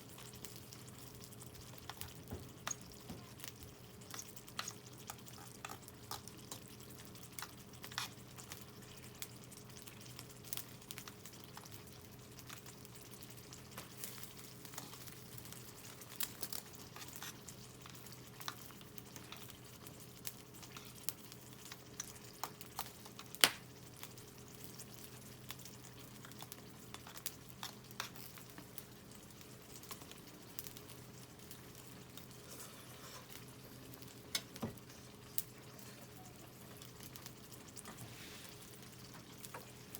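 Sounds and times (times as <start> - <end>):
faint steady hum: 0.0 - 39.9
campfire crackling and popping: 22.8 - 23.7.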